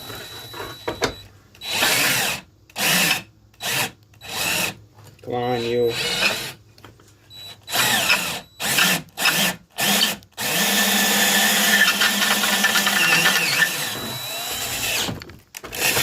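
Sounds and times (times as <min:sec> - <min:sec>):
electric drill boring into metal: 0:01.6 - 0:04.8, 0:05.9 - 0:06.6, 0:07.7 - 0:16.0.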